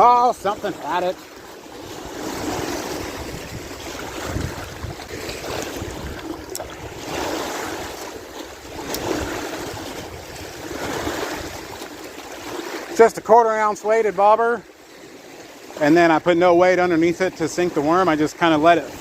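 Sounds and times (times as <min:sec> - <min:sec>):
waves washing against dam: 0:00.0 - 0:19.0
wind rumbling on microphone: 0:01.7 - 0:12.6.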